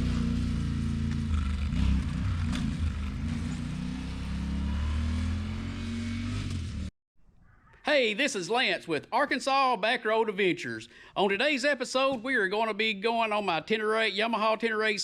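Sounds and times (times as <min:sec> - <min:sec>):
motorcycle engine running: 0:00.0 - 0:06.9.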